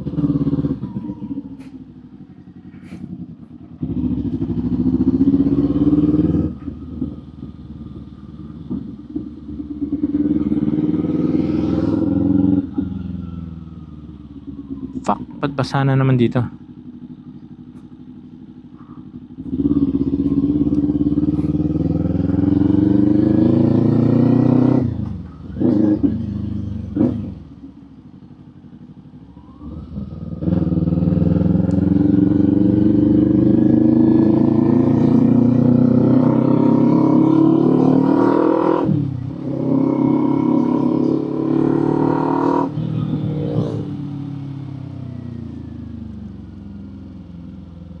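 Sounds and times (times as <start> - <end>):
motorcycle engine accelerating: 0.0 - 48.0.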